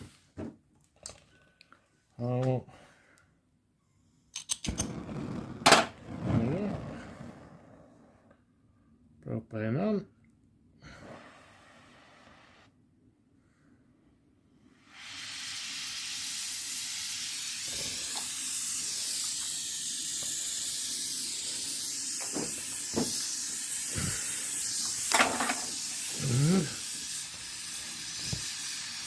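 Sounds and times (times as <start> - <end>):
brazing torch hissing: 4.7 - 8.1, 10.9 - 12.7, 14.7 - 29.0.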